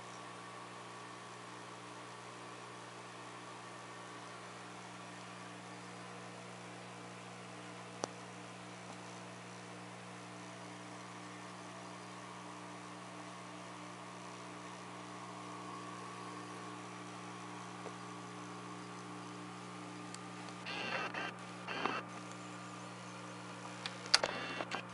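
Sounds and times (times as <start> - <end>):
typewriter motor humming: 20.6 - 22.1, 24.0 - 24.9.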